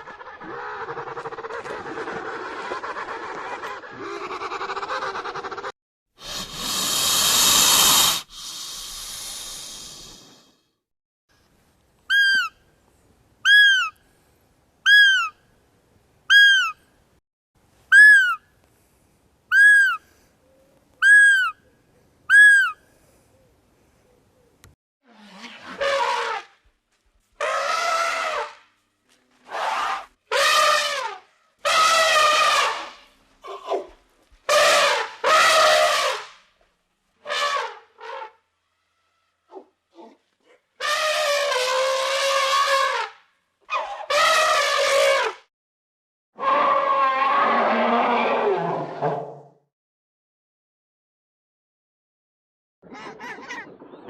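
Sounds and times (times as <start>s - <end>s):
bird whistled calls: 12.1s - 12.5s, 16.3s - 16.8s, 17.9s - 18.4s, 19.5s - 20.0s, 21.0s - 21.6s, 22.3s - 22.8s
elephant trumpeting: 25.4s - 26.5s, 27.4s - 28.6s, 29.5s - 33.8s, 34.5s - 36.2s, 40.8s - 43.1s, 44.1s - 45.3s, 46.4s - 49.4s.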